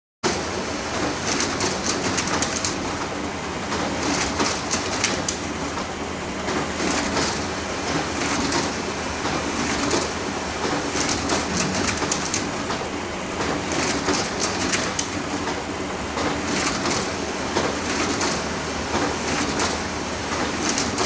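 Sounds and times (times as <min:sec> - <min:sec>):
photocopier humming and whirring: 0:00.3 - 0:21.0
photocopier clicks and swishes: 0:01.2 - 0:02.8, 0:03.7 - 0:05.4, 0:08.2 - 0:12.8, 0:13.4 - 0:15.2, 0:16.2 - 0:18.4, 0:19.0 - 0:21.0.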